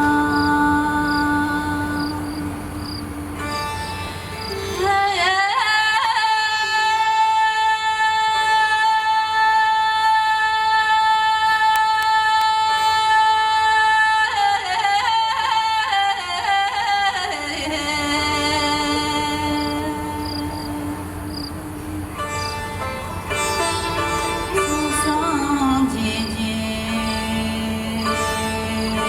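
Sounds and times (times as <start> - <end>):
woman singing: 0.0 - 3.3, 4.5 - 22.7, 23.3 - 29.0
soft instrumental accompaniment: 3.1 - 7.7, 21.7 - 29.0.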